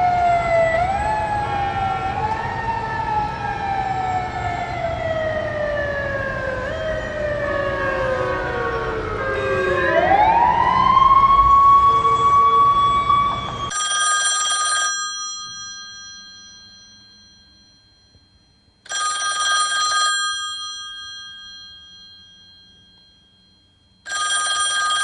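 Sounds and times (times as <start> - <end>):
siren-like wail: 0.0 - 13.7
telephone bell ringing: 13.6 - 25.0.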